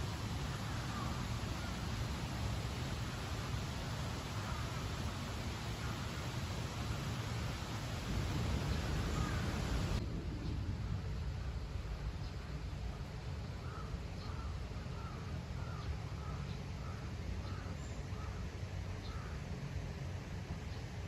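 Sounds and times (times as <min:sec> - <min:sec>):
steady low rumble: 0:00.0 - 0:17.4
crow cawing: 0:04.4 - 0:04.8, 0:09.1 - 0:09.6.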